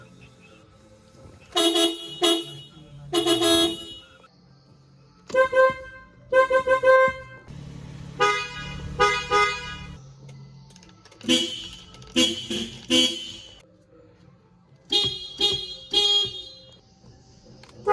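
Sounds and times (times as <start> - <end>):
car horns honking: 1.4 - 4.3, 5.3 - 7.5, 8.1 - 10.0, 11.2 - 13.6, 14.9 - 16.8.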